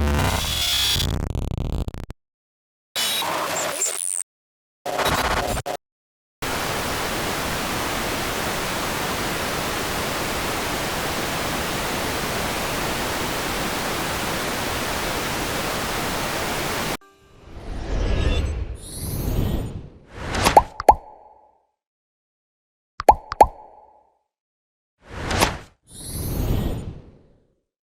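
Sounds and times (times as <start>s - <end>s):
static hiss: 6.4s - 17.0s.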